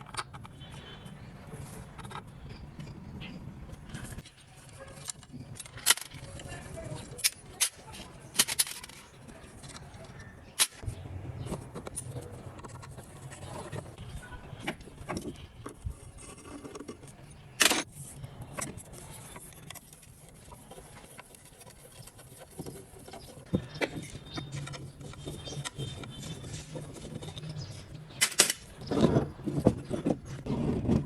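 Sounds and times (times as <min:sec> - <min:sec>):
metal tools clinking: 0:04.0 - 0:13.9.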